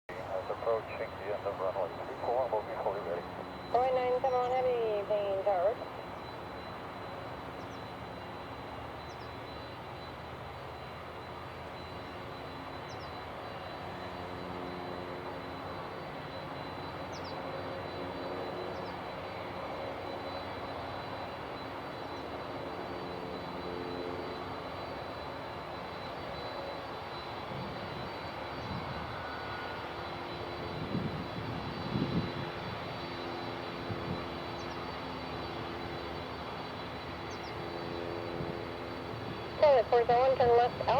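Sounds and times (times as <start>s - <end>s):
jet engine idling: 0.1s - 14.7s, 24.4s - 40.9s.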